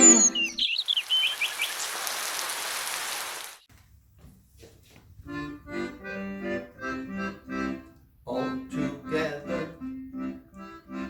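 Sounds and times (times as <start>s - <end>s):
bouncy accordion music: 5.3s - 11.0s.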